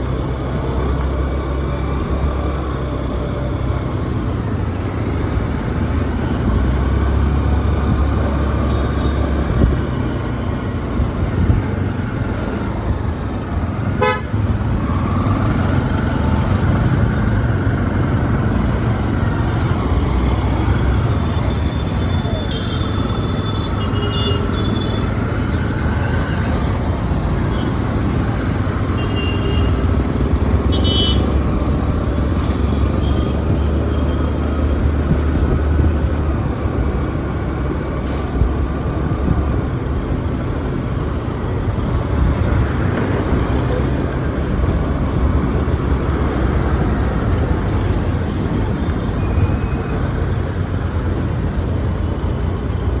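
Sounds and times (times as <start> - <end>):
traffic rumble: 0.0 - 53.0
car horn toots: 14.0 - 14.4.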